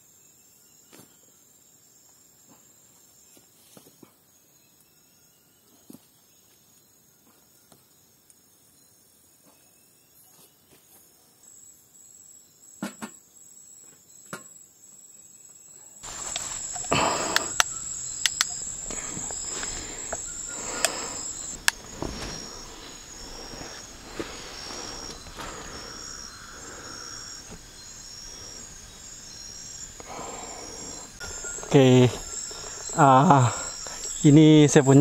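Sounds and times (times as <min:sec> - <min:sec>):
crickets trilling: 0:11.4 - 0:35.0
pulsed insect chirp: 0:15.1 - 0:35.0
sharp clicks: 0:16.1 - 0:21.8.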